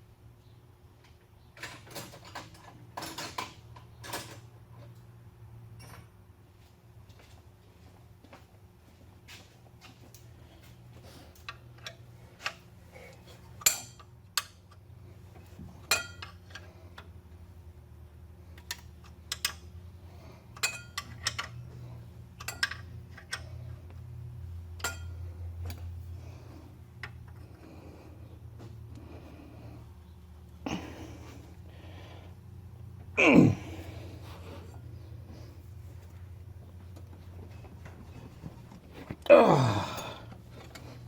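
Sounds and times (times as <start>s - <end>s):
low steady hum: 0.0s - 41.0s
wrench clinking on metal bolts: 13.6s - 14.8s, 15.8s - 16.7s, 18.6s - 19.8s, 20.5s - 21.7s, 22.4s - 23.6s, 24.8s - 25.2s.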